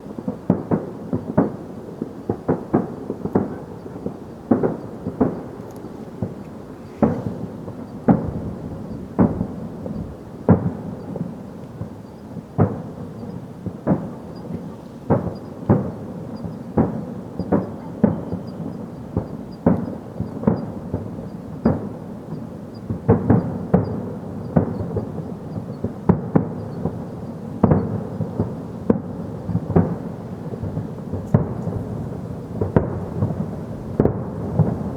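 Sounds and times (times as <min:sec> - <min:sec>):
fireworks bangs: 0:00.0 - 0:34.9.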